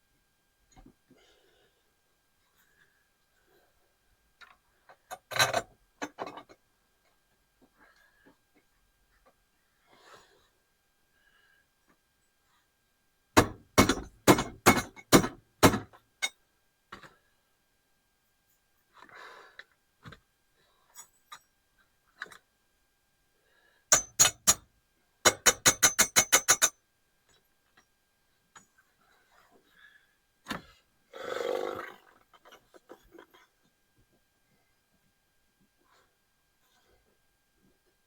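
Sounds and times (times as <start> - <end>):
hammer striking metal: 23.9 - 24.6.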